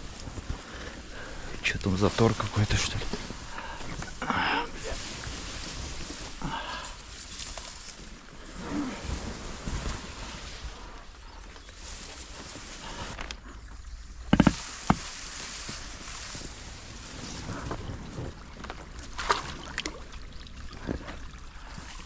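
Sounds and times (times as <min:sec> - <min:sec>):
paddle strokes: 0:00.0 - 0:13.6, 0:14.3 - 0:22.0
water swishing along hull: 0:00.0 - 0:22.0
sharp knocks: 0:14.3 - 0:15.0.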